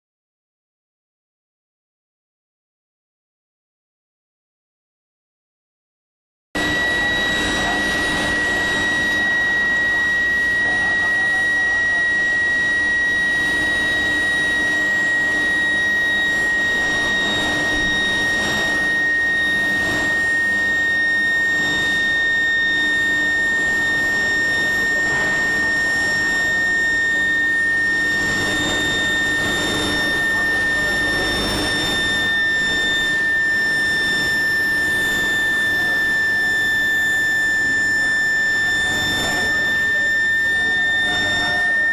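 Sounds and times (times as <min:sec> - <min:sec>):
mill noise: 0:06.6 - 0:36.1
high-pitched induction coil whine: 0:06.6 - 0:41.9.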